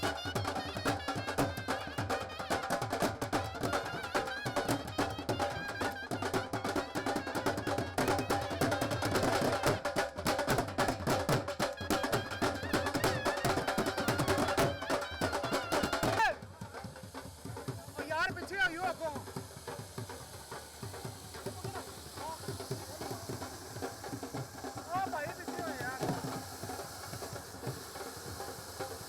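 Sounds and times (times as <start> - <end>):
fast dense drum strikes: 8.0 - 11.9.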